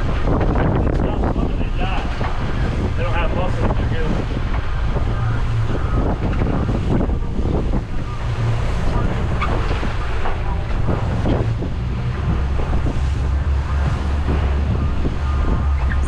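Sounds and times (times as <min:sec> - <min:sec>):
boat engine droning: 0:00.0 - 0:16.0
waves splashing against hull: 0:00.0 - 0:16.0
wind buffeting microphone: 0:00.0 - 0:16.0.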